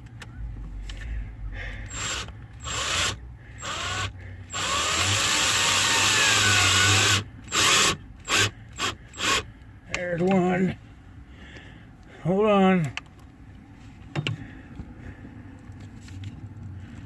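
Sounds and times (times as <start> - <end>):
power drill driving screw: 1.9 - 9.4.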